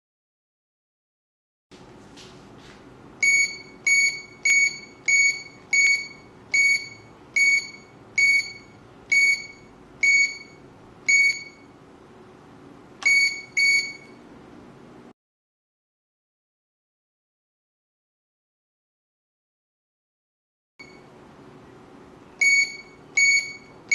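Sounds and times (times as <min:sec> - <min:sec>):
keypad beeps: 0:03.2 - 0:11.7, 0:13.0 - 0:14.2, 0:20.8 - 0:21.1, 0:22.4 - 0:23.9.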